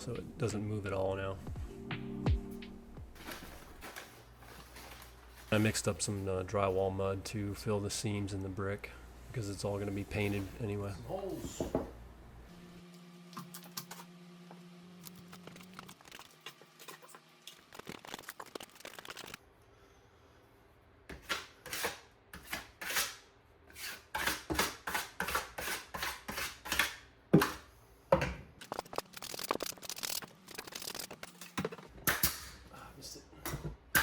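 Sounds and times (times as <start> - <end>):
putty knife scraping drywall mud: 21.1 - 27.0.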